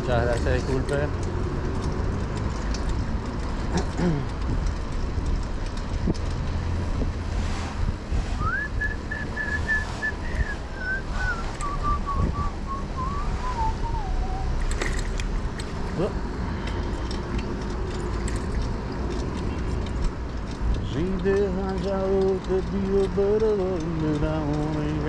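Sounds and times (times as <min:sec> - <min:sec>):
wind rumble on microphone: 0:00.0 - 0:14.7
street noise: 0:00.0 - 0:25.0
person whistling a tune: 0:08.4 - 0:14.6.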